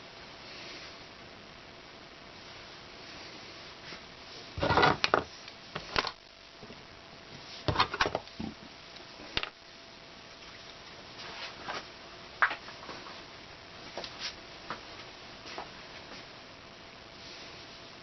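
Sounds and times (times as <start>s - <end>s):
parts clattering on a workbench: 4.6s - 6.2s.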